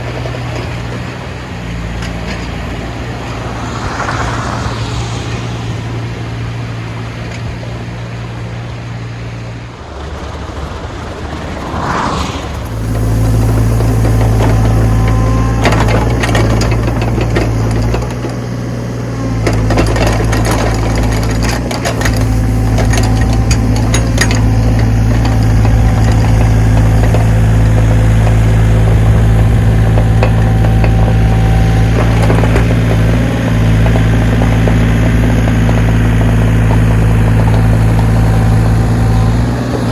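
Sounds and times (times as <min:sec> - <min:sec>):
backhoe engine running: 0:00.0 - 0:39.9
machine knocks and clatter: 0:12.8 - 0:18.6, 0:19.3 - 0:39.9.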